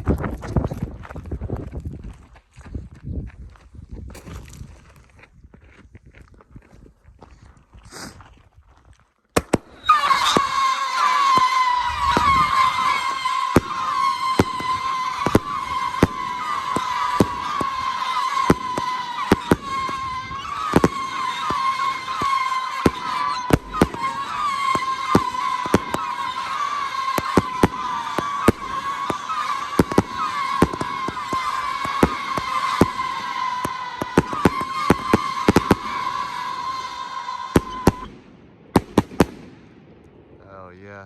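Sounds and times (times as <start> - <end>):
firework bangs and pops: 9.3 - 40.2
firework wavering whistle: 9.4 - 39.6.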